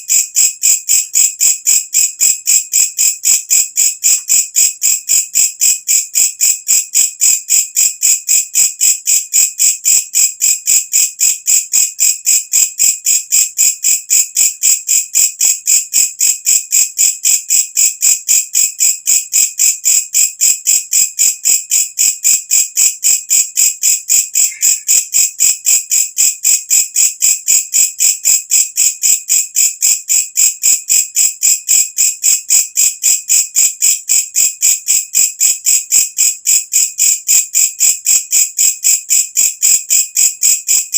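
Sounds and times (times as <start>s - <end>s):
bush cricket chirping: 0.0s - 13.7s, 22.8s - 26.8s.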